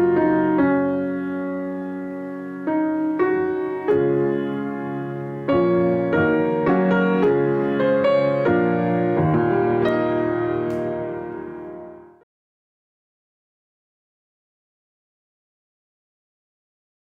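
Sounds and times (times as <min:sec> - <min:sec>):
slow gentle piano music: 0:00.0 - 0:12.2.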